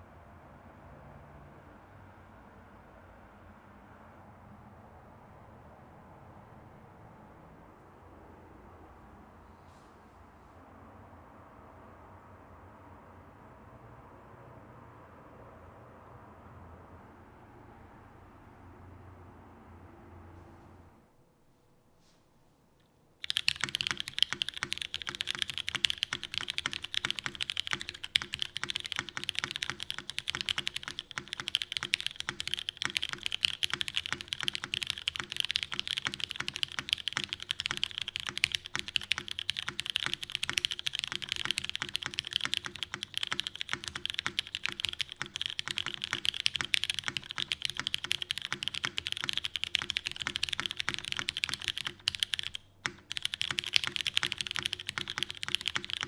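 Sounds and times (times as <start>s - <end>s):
fast mechanical keyboard typing: 23.2s - 56.0s.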